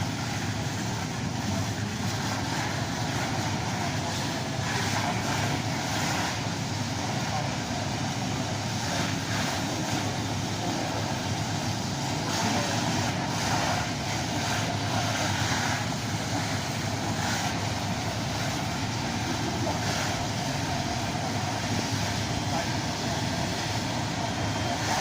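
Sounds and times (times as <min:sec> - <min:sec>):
fire engines idling: 0:00.0 - 0:25.0.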